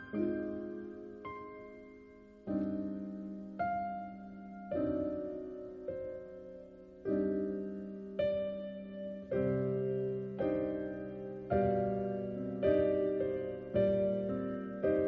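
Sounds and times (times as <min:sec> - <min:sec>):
gentle piano chords: 0:00.0 - 0:15.0.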